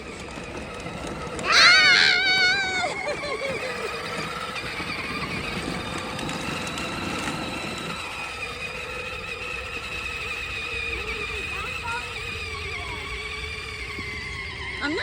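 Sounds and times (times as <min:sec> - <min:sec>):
small engine running: 0:00.0 - 0:15.0.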